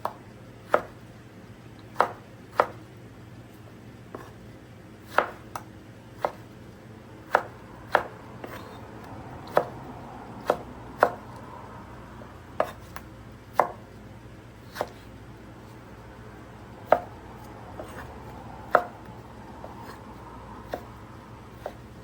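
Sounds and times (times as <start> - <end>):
knife chopping on cutting board: 0.0 - 1.0, 1.9 - 2.8, 4.1 - 4.4, 5.0 - 6.6, 7.2 - 11.4, 12.6 - 14.0, 14.6 - 15.2, 16.8 - 22.0.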